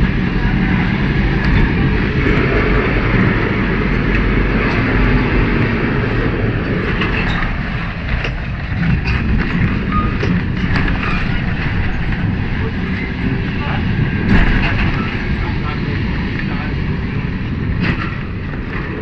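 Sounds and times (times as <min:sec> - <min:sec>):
tram rumbling on rails: 0:00.0 - 0:19.0.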